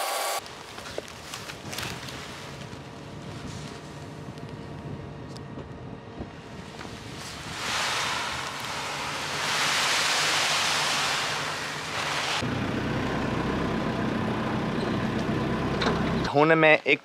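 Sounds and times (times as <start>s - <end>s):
truck engine running: 2.3s - 16.2s
loud rushing hiss: 6.4s - 12.5s.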